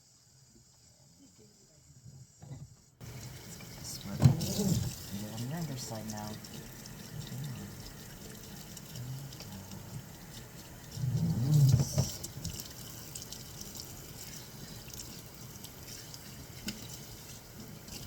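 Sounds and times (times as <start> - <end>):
water dripping and trickling: 3.0 - 18.0
low moaning voice: 11.0 - 12.1.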